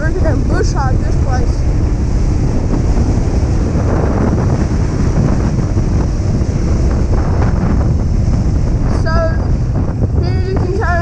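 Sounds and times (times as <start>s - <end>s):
wind rushing over microphone: 0.0s - 11.0s.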